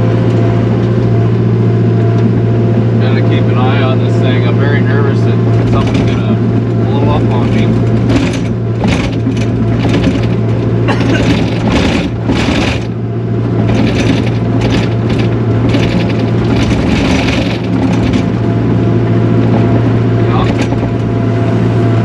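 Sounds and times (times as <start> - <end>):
track loader engine drone: 0.0 - 22.0
mechanical clatter: 5.5 - 18.7, 20.3 - 21.2.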